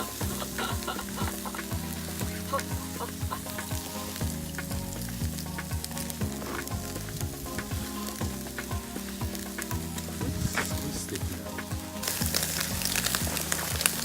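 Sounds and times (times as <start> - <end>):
background music with beat: 0.0 - 14.0
meat sizzling in a pan: 0.0 - 14.0.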